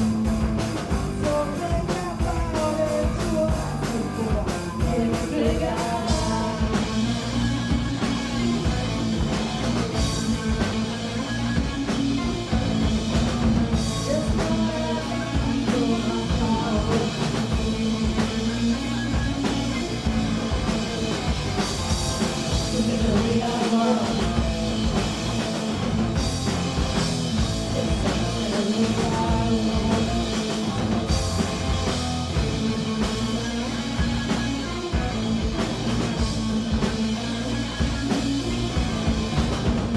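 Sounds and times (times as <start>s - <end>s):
bass guitar: 0.0s - 39.9s
distorted guitar: 0.0s - 39.9s
drum kit: 0.0s - 39.9s
person singing: 1.1s - 7.2s, 13.9s - 18.9s, 22.6s - 24.8s, 27.6s - 30.9s.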